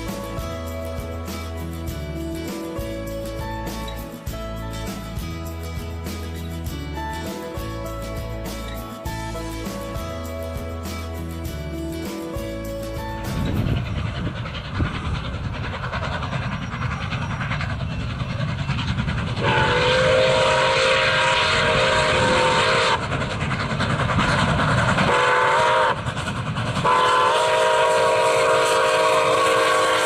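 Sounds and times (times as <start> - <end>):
steam train rumbling past: 0.0 - 30.0
steam locomotive whistle: 19.4 - 23.2, 25.0 - 26.1, 26.8 - 30.0.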